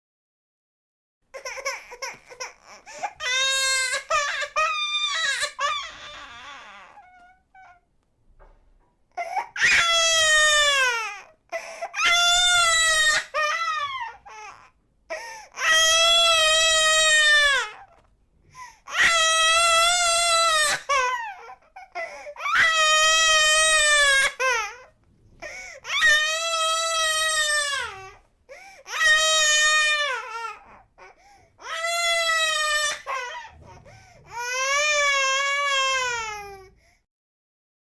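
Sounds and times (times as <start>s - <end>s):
infant crying: 1.3s - 7.8s, 9.1s - 36.8s
catching breaths and whimpers: 33.1s - 34.6s.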